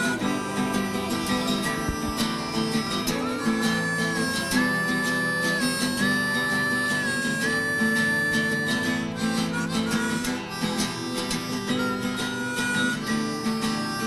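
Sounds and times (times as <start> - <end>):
acoustic guitar strumming: 0.0 - 14.0
harmonica long notes: 0.0 - 14.0.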